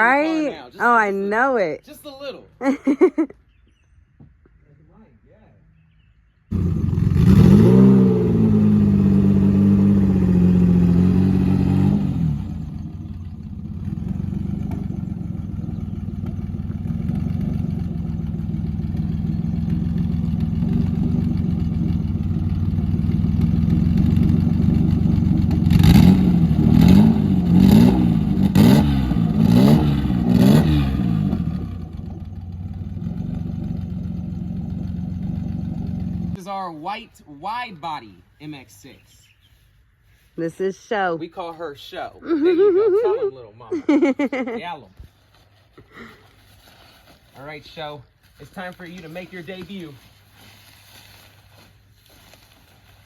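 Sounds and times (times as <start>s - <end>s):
car engine idling: 6.5s - 36.4s
car engine revving: 6.5s - 36.4s.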